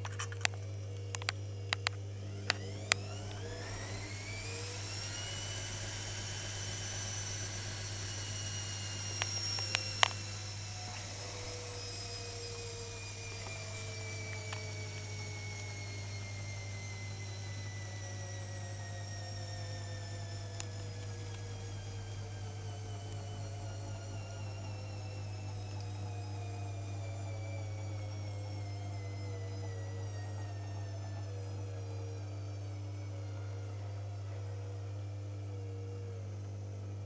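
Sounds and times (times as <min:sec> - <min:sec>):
constant low hum: 0:00.0 - 0:37.0
washing machine motor whining: 0:00.0 - 0:37.0
sharp clicks: 0:09.1 - 0:11.6.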